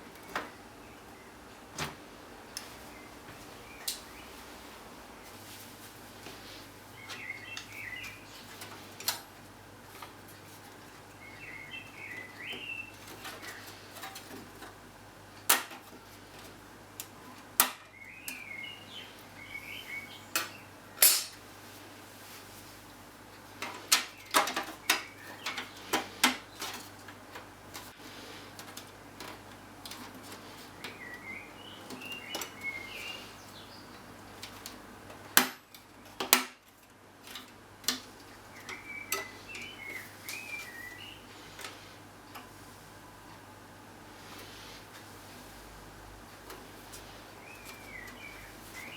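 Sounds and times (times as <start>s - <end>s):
faint bird chirping: 2.4s - 8.8s, 10.3s - 14.4s, 17.1s - 21.0s, 24.1s - 26.8s, 30.2s - 34.4s, 38.4s - 42.0s, 46.9s - 48.9s.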